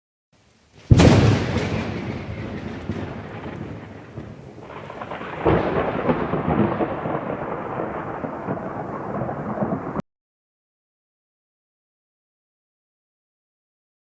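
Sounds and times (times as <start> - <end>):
rain hiss: 0.4 - 10.0
thunder rumbling: 0.7 - 10.0
loud thunder clap: 0.8 - 10.0.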